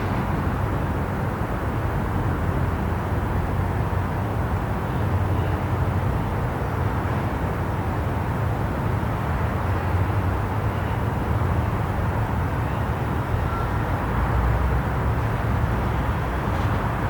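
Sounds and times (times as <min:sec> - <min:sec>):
distant traffic rumble: 0:00.0 - 0:02.6
street noise hiss: 0:00.0 - 0:17.0.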